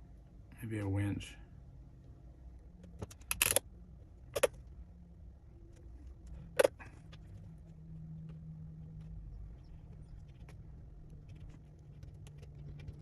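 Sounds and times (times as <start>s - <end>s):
faint low hum: 0.0s - 13.0s
small hard parts clicking: 3.0s - 3.6s.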